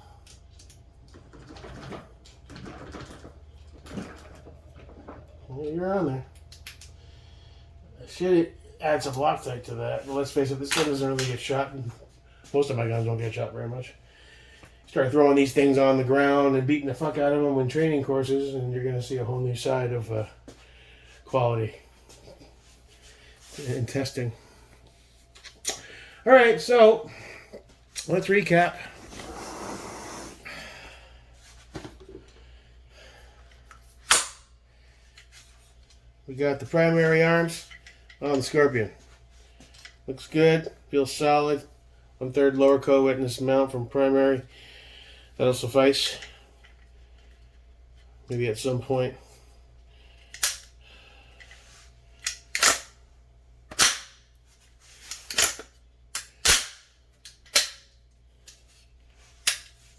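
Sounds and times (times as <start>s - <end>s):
person breathing: 7.0s - 8.0s, 14.0s - 14.9s, 20.5s - 21.3s, 25.7s - 26.3s, 28.9s - 31.4s, 44.5s - 45.4s, 49.3s - 51.7s
gun parts clacking and snapping: 50.3s - 50.8s, 52.2s - 53.0s, 53.7s - 54.2s, 55.0s - 58.6s, 59.4s - 59.8s.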